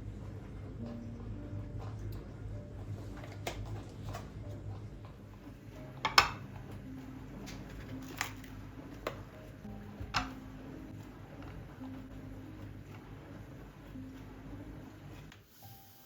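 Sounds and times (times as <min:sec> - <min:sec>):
kitchen items clinking: 0:07.4 - 0:09.2.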